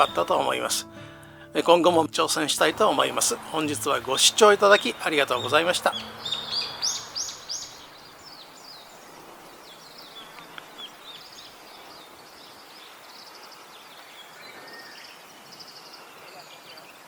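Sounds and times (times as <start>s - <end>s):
faint birdsong chirps and trills: 4.1s - 17.0s.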